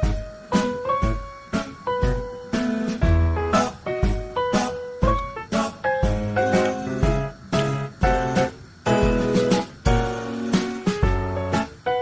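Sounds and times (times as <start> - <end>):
deep kick drum: 3.0 - 3.4, 4.0 - 4.4, 6.0 - 6.4, 7.0 - 7.4
melody of held notes: 6.2 - 12.0.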